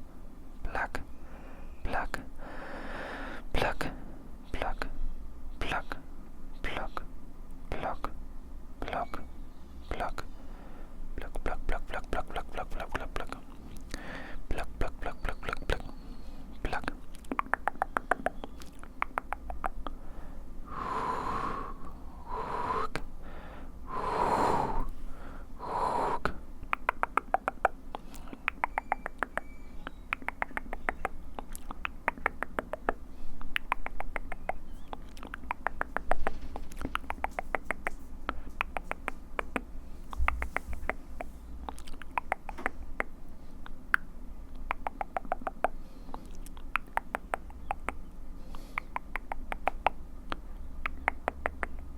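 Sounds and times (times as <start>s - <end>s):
wet mouth clicks and pops: 16.7s - 20.0s, 26.2s - 51.9s
breathy blowing: 19.9s - 26.5s.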